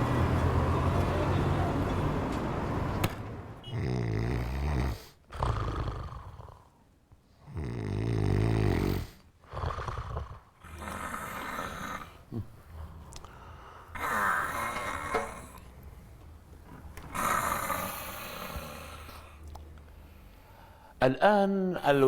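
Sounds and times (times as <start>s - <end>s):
person snoring heavily: 3.6s - 6.7s, 7.4s - 13.0s, 13.9s - 15.6s, 17.1s - 19.4s.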